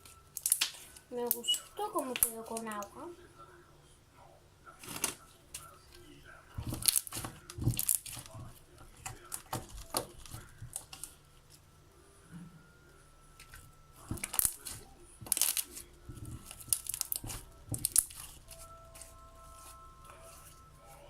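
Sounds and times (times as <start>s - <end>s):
slime sticky crackles and pops: 0.1s - 2.9s, 6.7s - 8.4s, 13.4s - 18.6s.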